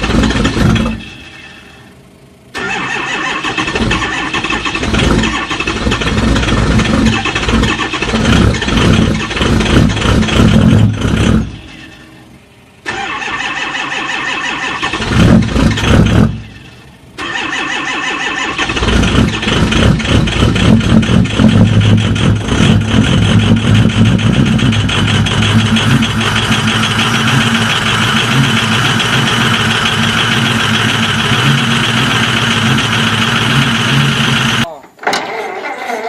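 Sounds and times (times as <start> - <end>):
large engine starting and running: 0.0 - 36.0.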